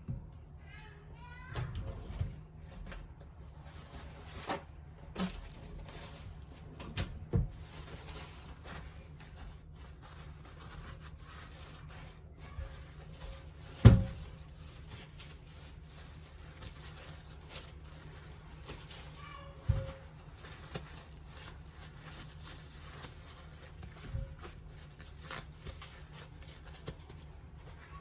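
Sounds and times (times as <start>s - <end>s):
low steady hum: 0.0s - 28.0s.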